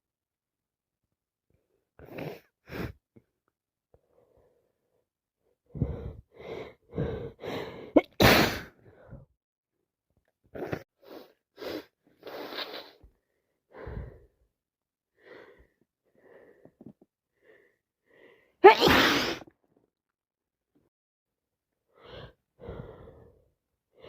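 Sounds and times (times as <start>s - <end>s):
person sneezing: 8.0s - 8.7s, 18.6s - 19.5s.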